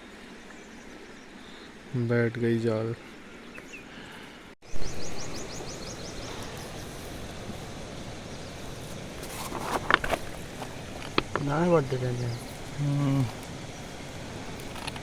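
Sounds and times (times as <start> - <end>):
bird chirping: 2.9 - 15.0
river water rushing: 4.7 - 15.0.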